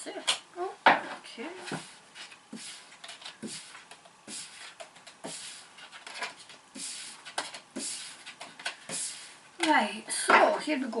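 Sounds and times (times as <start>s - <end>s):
cards shuffled on a table: 1.7s - 9.3s.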